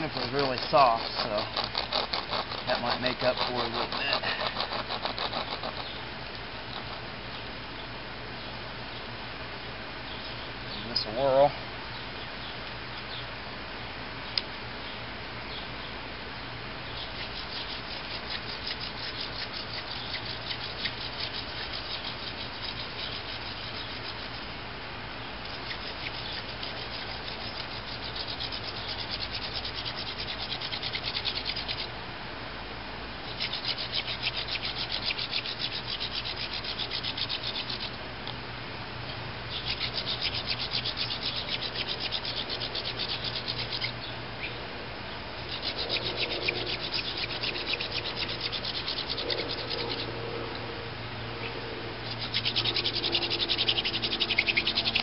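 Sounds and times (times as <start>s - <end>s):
wood rubbing on wood: 0.0s - 5.9s, 17.1s - 24.5s, 25.4s - 31.9s, 33.3s - 37.9s, 39.5s - 43.9s, 45.5s - 50.1s.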